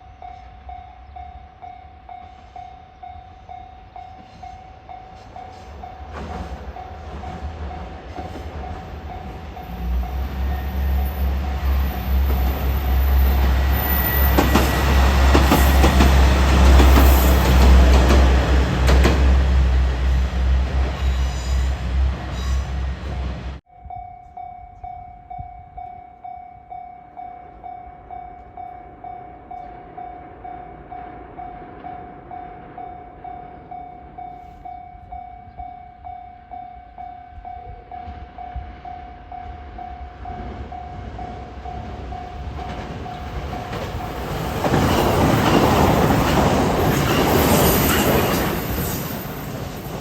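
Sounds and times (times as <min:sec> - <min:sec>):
level-crossing warning bell: 0:00.0 - 0:19.1, 0:23.6 - 0:50.0
train wheels on rails: 0:00.2 - 0:23.6, 0:24.3 - 0:50.0.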